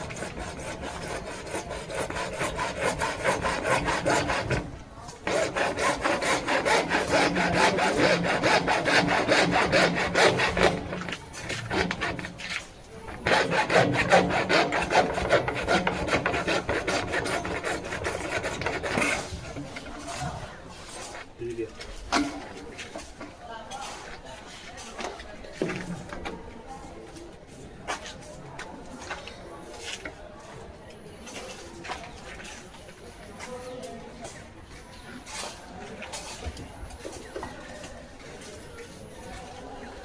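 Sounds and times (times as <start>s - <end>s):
hand tool rasping on plastic pipe: 0.0s - 20.2s.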